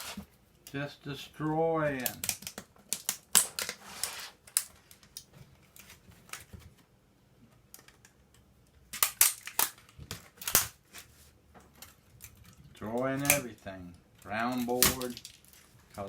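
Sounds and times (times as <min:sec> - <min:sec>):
plastic keyboard parts cracking: 0:02.0 - 0:03.8, 0:07.7 - 0:10.8, 0:14.2 - 0:15.6.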